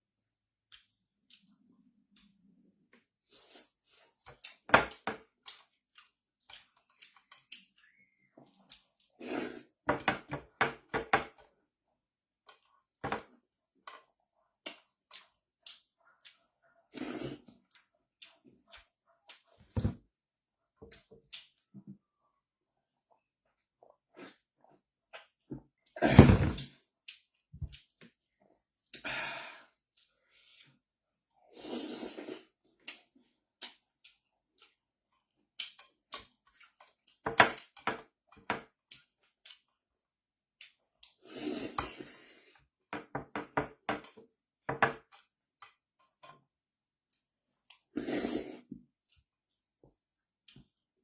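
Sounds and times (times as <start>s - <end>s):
chewing and mouth sounds: 0.6s - 2.6s, 3.4s - 9.4s, 32.4s - 37.8s, 38.8s - 39.8s.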